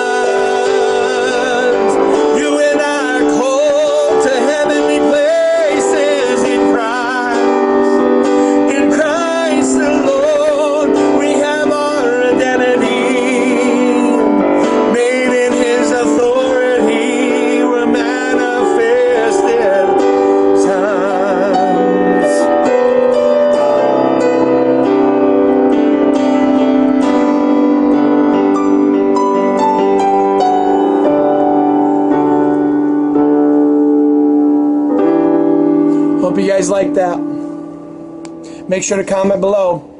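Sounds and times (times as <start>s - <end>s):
man singing with vibrato: 0.0s - 25.9s
sustained keyboard chords: 0.0s - 39.9s.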